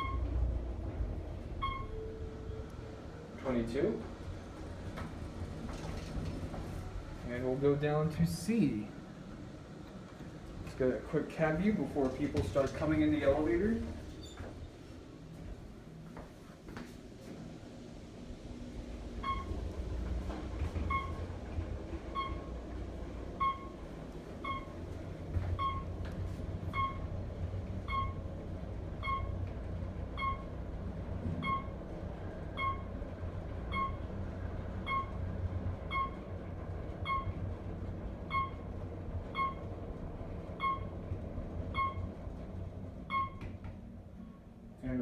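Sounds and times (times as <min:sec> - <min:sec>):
short electronic beep: 0:00.0 - 0:00.3, 0:01.6 - 0:02.0
elevator rumbling: 0:00.0 - 0:45.0.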